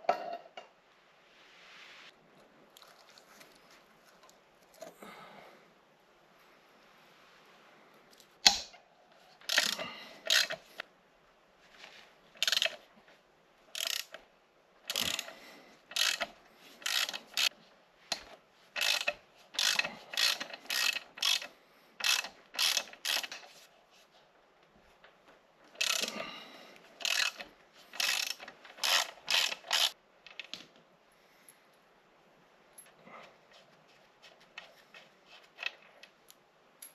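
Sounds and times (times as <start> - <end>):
ratchet wrench clicking: 9.4 - 10.7, 12.4 - 12.8, 13.8 - 14.2, 14.9 - 15.3, 15.9 - 23.5, 25.8 - 26.1, 27.0 - 30.4.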